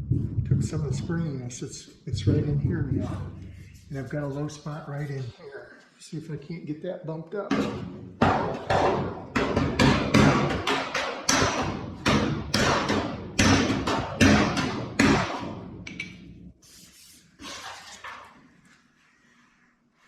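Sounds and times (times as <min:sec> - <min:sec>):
hammer striking steel panel: 0:07.5 - 0:16.2.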